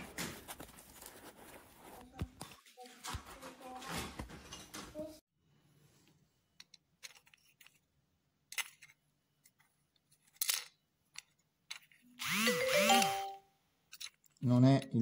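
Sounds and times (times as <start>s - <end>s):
small parts clicking and tapping: 6.6s - 7.9s, 8.5s - 13.2s, 13.9s - 14.9s
electronic alarm chime: 12.4s - 13.5s.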